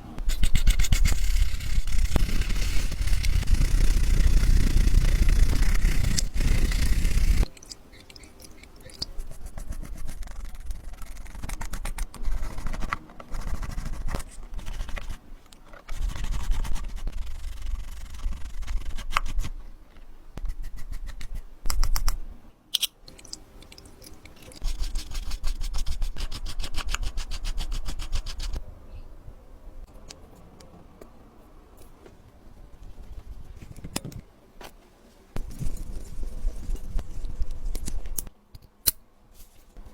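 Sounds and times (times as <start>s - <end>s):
small tools scraping watch parts: 0.3s - 13.0s.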